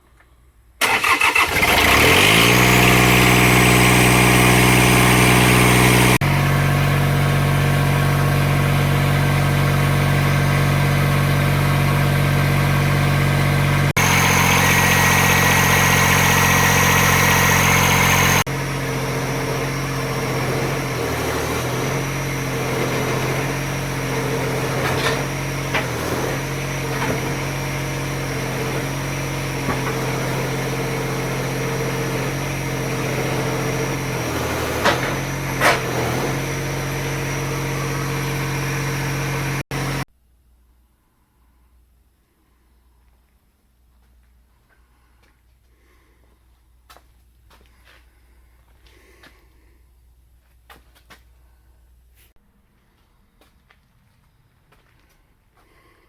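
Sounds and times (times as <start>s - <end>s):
engine cranking and running: 0.8s - 40.1s.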